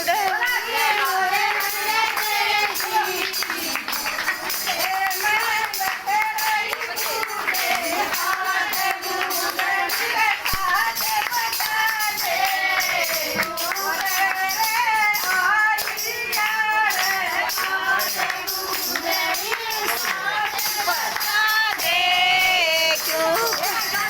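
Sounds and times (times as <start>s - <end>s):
crisp percussion beat: 0.0s - 24.0s
person singing: 17.4s - 24.0s.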